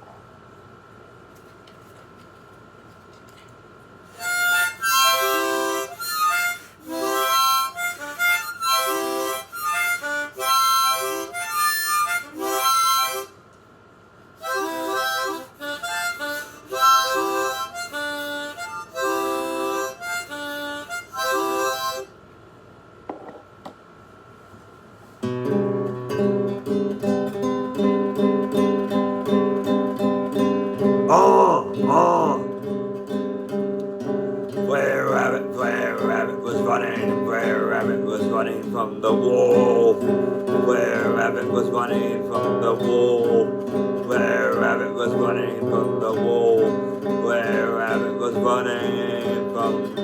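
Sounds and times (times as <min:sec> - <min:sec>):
harmonica playing chords: 0:04.1 - 0:13.4, 0:14.4 - 0:22.2, 0:30.0 - 0:32.7, 0:34.1 - 0:50.0.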